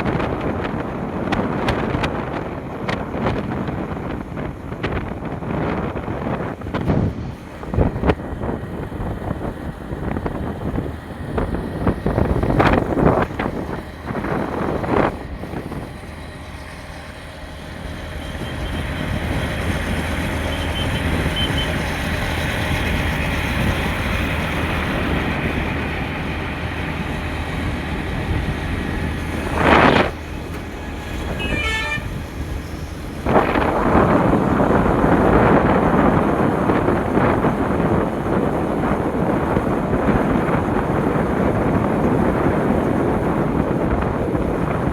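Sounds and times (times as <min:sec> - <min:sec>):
steady low hum: 0:00.0 - 0:42.2
road traffic: 0:00.0 - 0:44.9
wind buffeting microphone: 0:00.0 - 0:44.9
short horn beeps: 0:20.5 - 0:21.8, 0:31.3 - 0:32.3.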